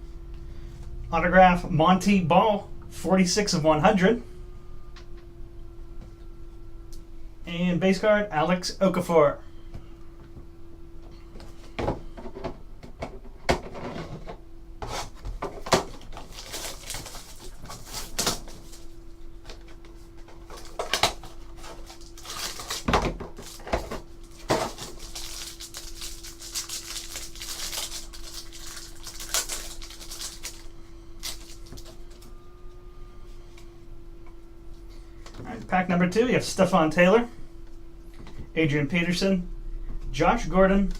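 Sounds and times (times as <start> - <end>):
faint steady hum: 0.0 - 40.9
card pack crinkling: 15.6 - 19.6, 20.3 - 32.0.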